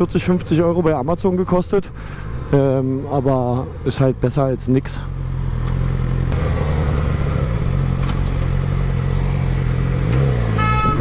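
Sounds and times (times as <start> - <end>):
road noise: 0.0 - 11.0
motorcycle engine running: 5.2 - 10.6.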